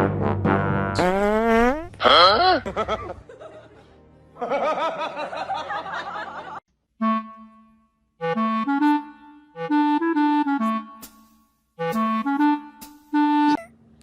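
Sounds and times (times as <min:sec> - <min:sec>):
clarinet music: 0:07.0 - 0:13.8.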